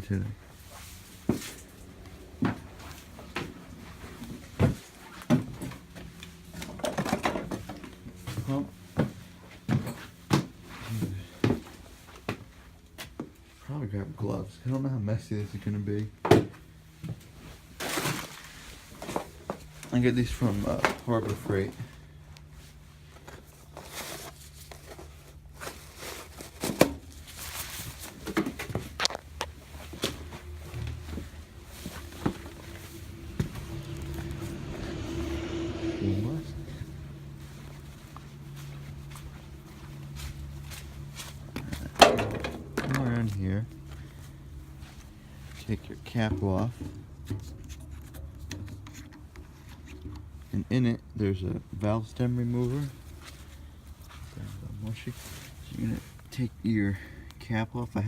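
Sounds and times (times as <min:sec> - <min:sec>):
low steady hum: 0:00.0 - 0:58.0
handling rustling and clicks: 0:46.4 - 0:50.5.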